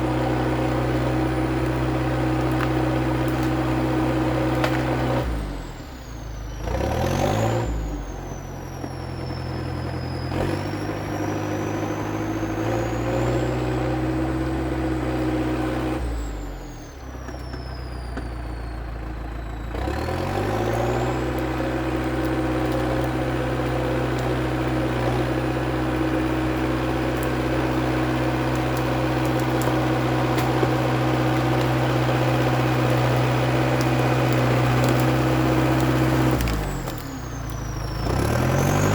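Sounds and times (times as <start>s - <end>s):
bulldozer diesel engine running: 0.0s - 38.9s.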